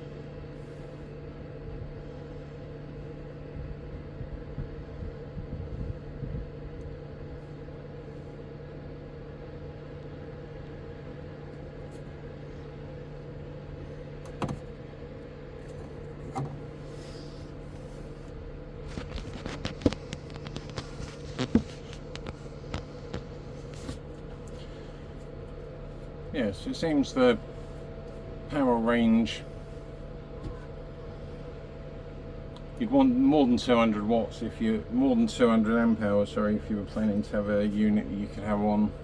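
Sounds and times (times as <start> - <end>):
air conditioner humming: 0.0 - 39.0.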